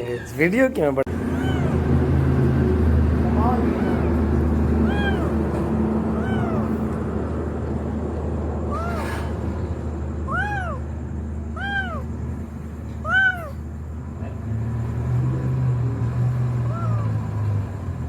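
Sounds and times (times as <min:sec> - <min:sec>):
cat meowing: 0:01.2 - 0:02.0, 0:03.4 - 0:07.0, 0:08.7 - 0:09.3, 0:10.3 - 0:12.2, 0:12.9 - 0:13.7, 0:16.6 - 0:17.3.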